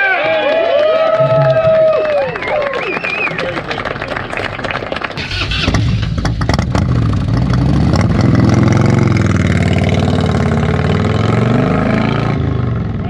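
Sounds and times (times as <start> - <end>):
motorcycle engine running: 5.2 - 11.3.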